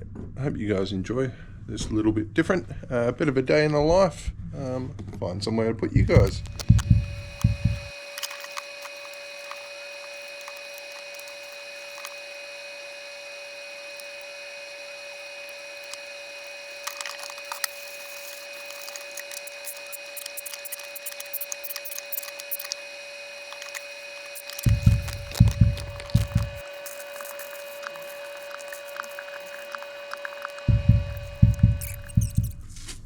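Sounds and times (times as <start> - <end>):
steady two-tone whine: 6.0 - 32.7
items handled clicking and rustling: 6.1 - 12.4, 15.4 - 22.9, 23.5 - 32.6.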